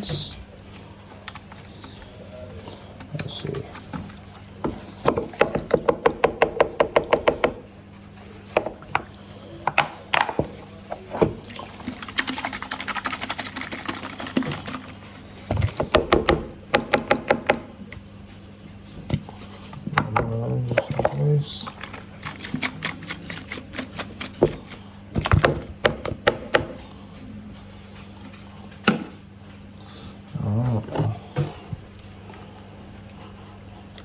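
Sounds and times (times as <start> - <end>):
gravel rattling in shaken pan: 11.7 - 15.2, 21.8 - 24.8.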